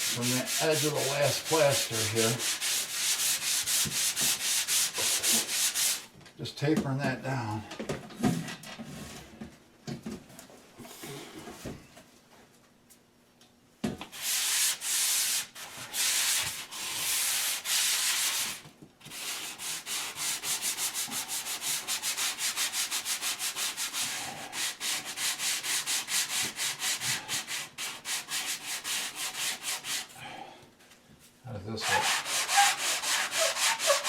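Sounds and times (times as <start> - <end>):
sanding block rubbing plaster: 0.0 - 6.1, 14.1 - 30.1, 31.8 - 34.0.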